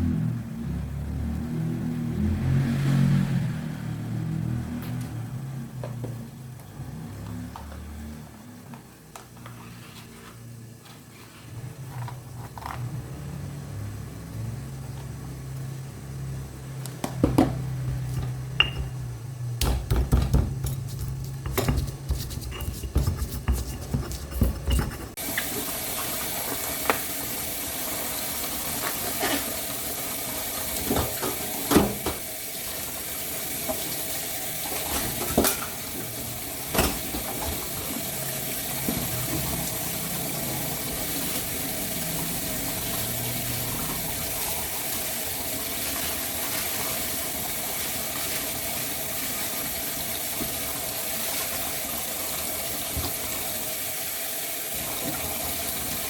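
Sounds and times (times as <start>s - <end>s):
tap running into sink: 17.0s - 19.0s, 19.6s - 25.5s, 36.7s - 38.0s
dishes knocking and clinking: 17.0s - 25.2s.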